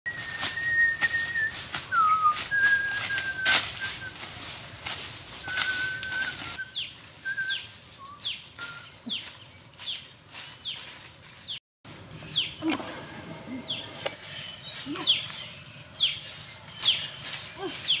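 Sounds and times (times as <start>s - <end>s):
whistled bird notes: 0.1s - 4.2s, 5.4s - 9.2s
small birds chirping: 5.0s - 11.6s, 12.2s - 12.7s, 13.5s - 18.0s.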